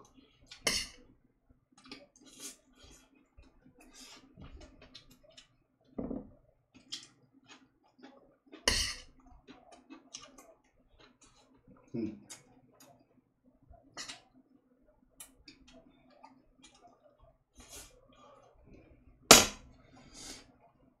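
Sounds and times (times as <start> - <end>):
person chewing: 1.8 - 5.6, 6.7 - 13.0.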